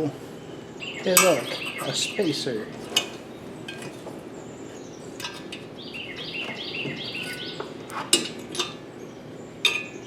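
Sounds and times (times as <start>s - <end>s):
songbird whistling: 0.5s - 2.2s, 5.8s - 7.8s
metal tools clinking: 2.8s - 4.1s, 5.2s - 5.7s, 6.4s - 8.8s, 9.6s - 10.0s.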